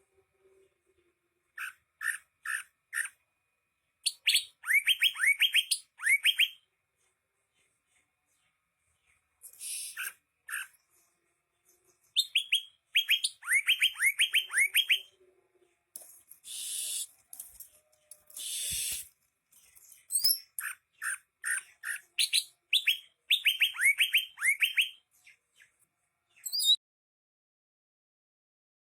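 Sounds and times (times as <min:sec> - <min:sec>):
bird whistling song: 0:01.6 - 0:03.2, 0:04.0 - 0:06.6, 0:09.5 - 0:10.7, 0:12.1 - 0:15.1, 0:16.4 - 0:17.2, 0:18.3 - 0:19.1, 0:20.1 - 0:25.0, 0:26.4 - 0:26.8.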